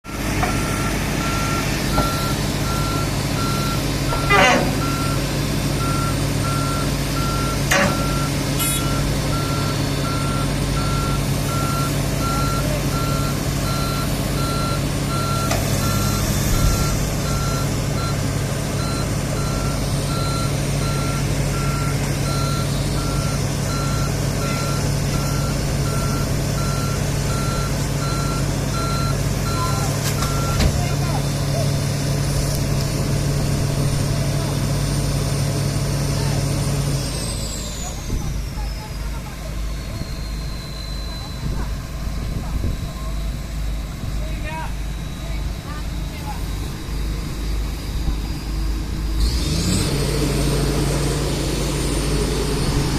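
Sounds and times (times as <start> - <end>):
excavator engine humming: 0.0 - 52.9
excavator travel alarm beeping: 0.3 - 31.4, 37.2 - 50.3.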